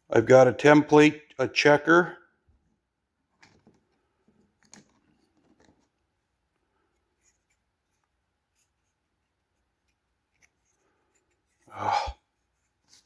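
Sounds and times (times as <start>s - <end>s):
small parts clicking and scraping: 3.4s - 6.0s.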